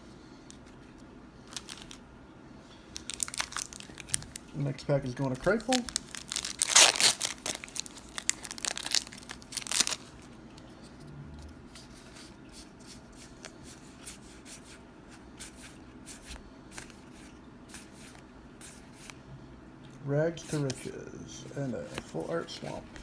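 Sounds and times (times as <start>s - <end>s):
wrapper torn open crinkling: 1.5s - 2.0s, 3.0s - 4.6s, 5.3s - 10.3s.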